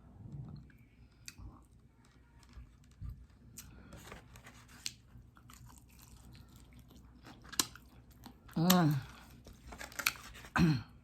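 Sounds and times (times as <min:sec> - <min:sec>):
chewing crispy chicken: 0:04.8 - 0:09.4.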